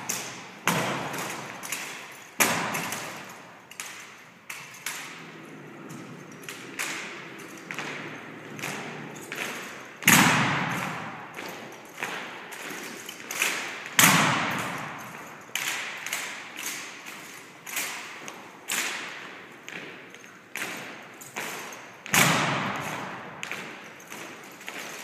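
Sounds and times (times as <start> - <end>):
rifles knocking in a large hall: 0.0 - 25.0.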